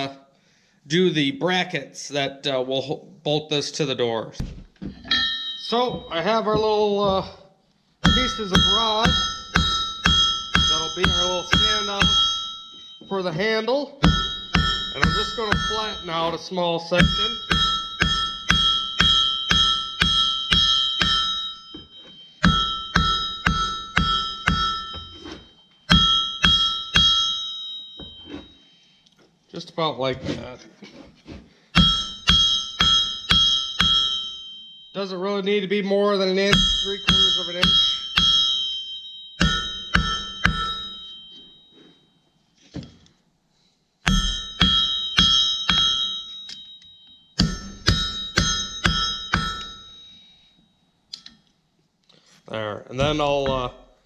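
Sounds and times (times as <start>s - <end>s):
hammer striking ringing anvil: 4.4s - 6.6s, 8.0s - 28.8s, 31.8s - 35.0s, 36.4s - 41.9s, 44.0s - 50.4s.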